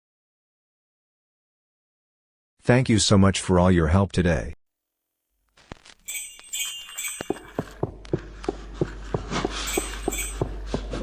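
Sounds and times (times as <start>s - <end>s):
jingling bells and chimes: 6.1s - 7.8s, 9.5s - 10.5s
ticking beat: 6.2s - 11.0s.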